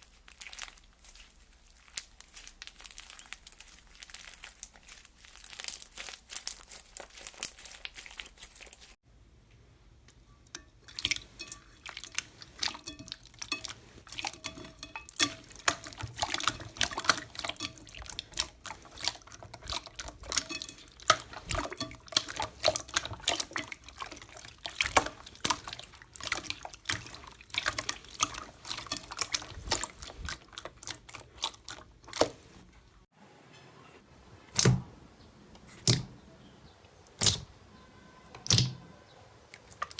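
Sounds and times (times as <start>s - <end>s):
crinkly crackle: 0.0s - 9.0s
slime squelching wet clicks: 10.9s - 32.6s, 37.1s - 37.5s, 38.4s - 38.8s.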